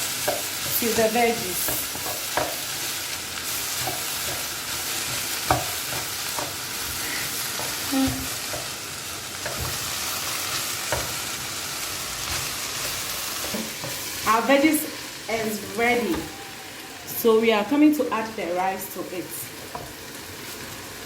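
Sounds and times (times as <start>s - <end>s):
vegetables sizzling in oil: 0.0s - 21.0s.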